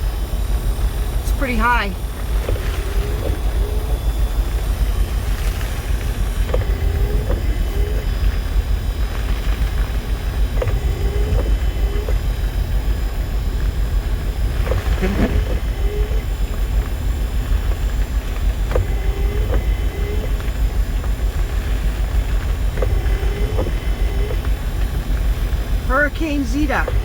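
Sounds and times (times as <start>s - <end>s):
short squeaky creaks: 14.7s - 15.7s.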